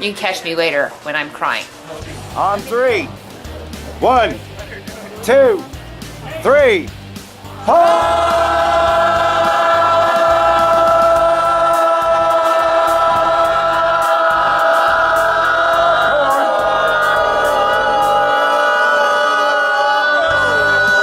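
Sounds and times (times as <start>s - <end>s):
choir-like voices holding a note: 7.6s - 21.0s.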